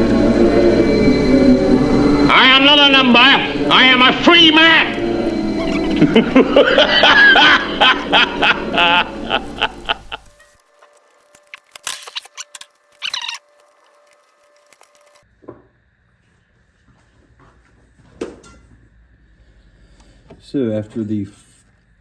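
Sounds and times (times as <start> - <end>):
man laughing mockingly: 5.5 - 10.4.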